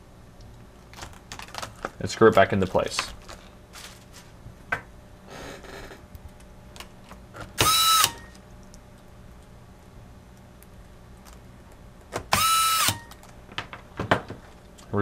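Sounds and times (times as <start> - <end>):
electric screwdriver motor whine: 7.6 - 8.4, 12.3 - 13.2.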